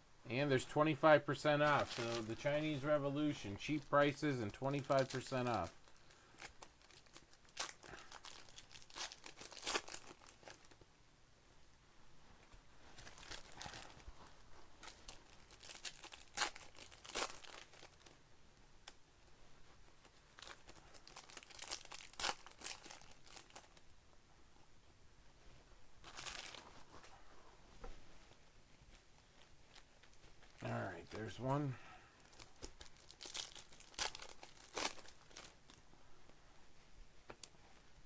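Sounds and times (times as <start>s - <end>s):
plastic wrappers tearing and crinkling: 1.6s - 10.8s, 13.0s - 18.2s, 20.0s - 23.9s, 26.0s - 27.1s, 32.2s - 35.8s.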